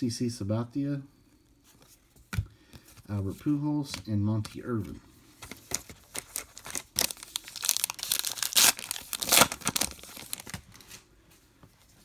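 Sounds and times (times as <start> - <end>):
card pack wrapper tearing: 5.5 - 11.0.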